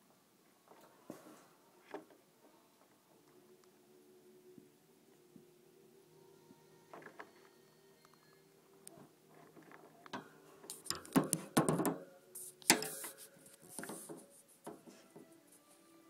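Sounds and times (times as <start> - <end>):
hamster clicking and crackling: 10.7 - 11.8.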